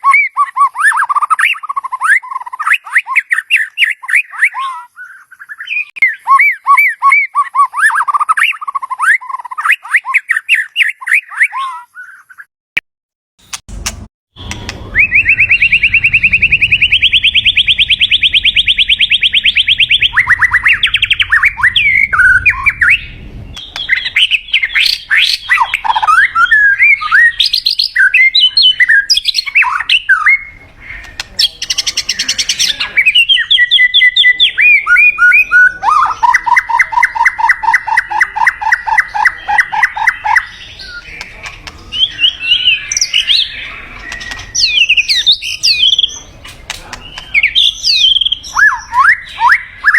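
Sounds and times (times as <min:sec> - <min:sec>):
bird singing whistled phrases: 0:00.0 - 0:12.5, 0:14.4 - 0:41.2, 0:41.9 - 0:46.2, 0:47.0 - 0:49.9
low rattling bird trill: 0:13.7 - 0:34.3
fast high bird trill: 0:14.4 - 0:34.2.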